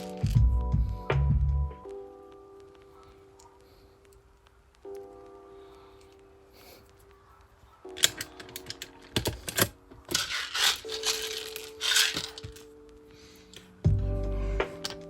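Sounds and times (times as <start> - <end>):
clicks and rattling of small objects: 0.0 - 0.4, 7.8 - 13.8, 14.8 - 15.0
background music with held tones: 0.0 - 15.0.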